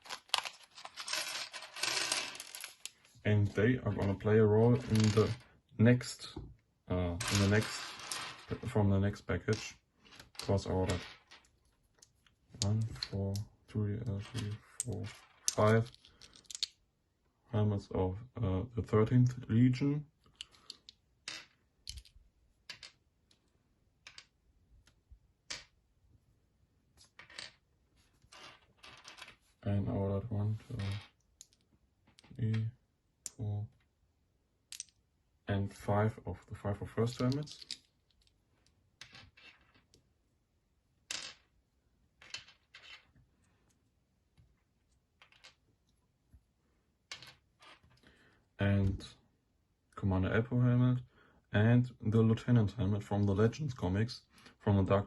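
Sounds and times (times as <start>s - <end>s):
plastic pieces clicking: 0.0s - 3.0s, 14.3s - 16.8s, 21.8s - 22.9s, 34.7s - 35.0s, 37.2s - 38.3s
plastic parts clicking: 14.8s - 16.7s.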